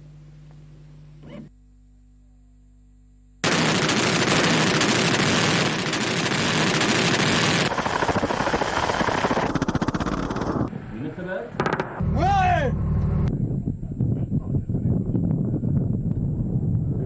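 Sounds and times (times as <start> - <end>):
loud sustained military roar: 12.0 - 13.3.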